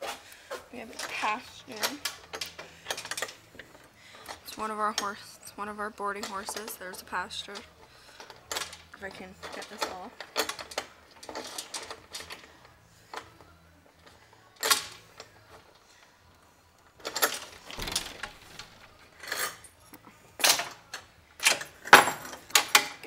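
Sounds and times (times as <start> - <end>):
metallic clanking and rattling: 17.0 - 19.7.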